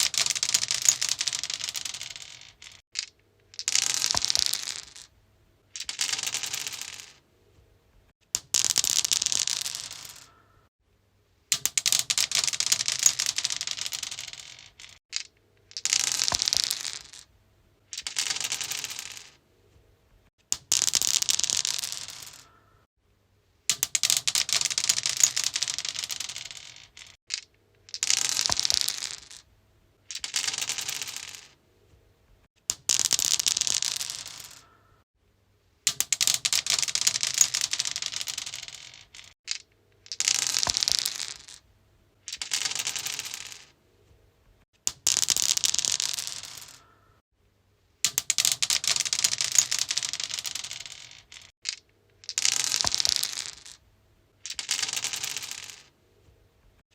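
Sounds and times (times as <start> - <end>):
dice rattling on stone: 0.0 - 5.1, 5.7 - 7.2, 8.4 - 10.3, 11.5 - 17.3, 17.9 - 19.4, 20.5 - 22.5, 23.7 - 29.5, 30.1 - 31.6, 32.7 - 34.7, 35.9 - 41.6, 42.2 - 43.8, 44.8 - 47.0, 48.0 - 53.8, 54.4 - 55.9.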